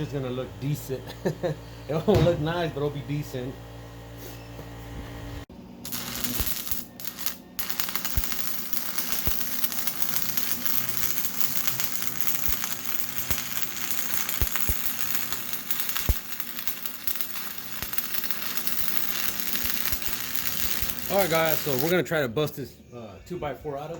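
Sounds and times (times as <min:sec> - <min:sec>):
arc welder crackling and sizzling: 0:05.2 - 0:22.0.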